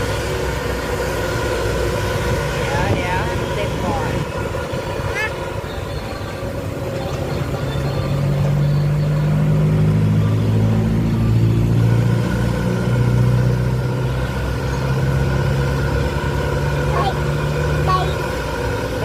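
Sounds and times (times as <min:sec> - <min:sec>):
diesel engine working under load: 0:00.0 - 0:19.0.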